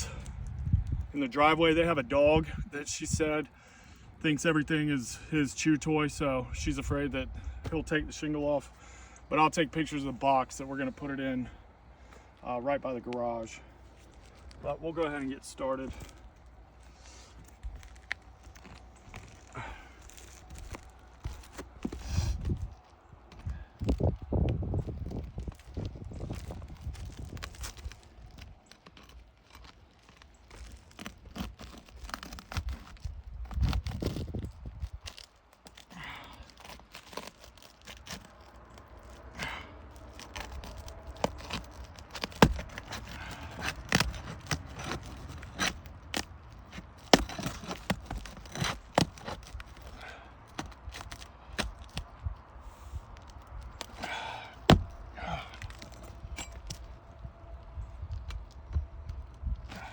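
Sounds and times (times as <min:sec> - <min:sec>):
roof shingles being pried up: 0:13.6 - 0:59.9.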